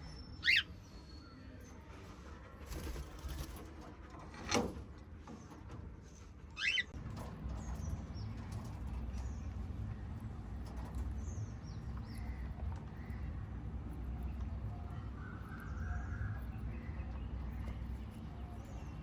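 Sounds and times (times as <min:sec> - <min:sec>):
parrots chirping: 0:00.2 - 0:00.8, 0:06.6 - 0:07.0.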